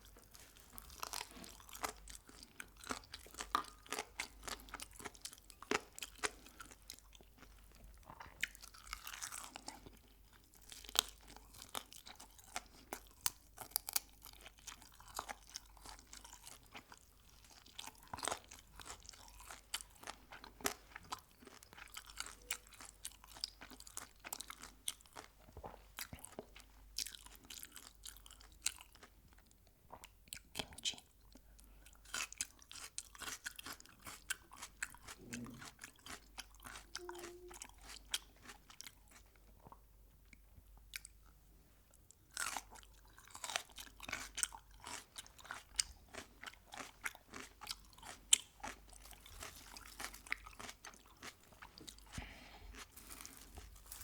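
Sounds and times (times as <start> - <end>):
chewing crisp chicken: 0.0 - 54.0.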